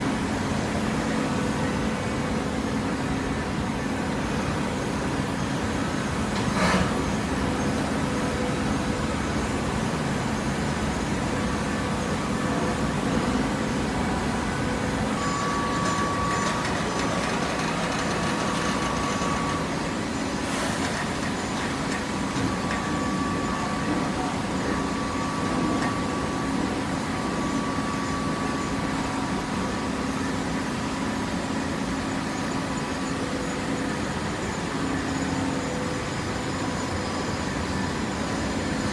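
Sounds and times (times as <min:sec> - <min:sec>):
baler machine hum: 0:05.5 - 0:31.2
thin high whine: 0:11.2 - 0:30.4.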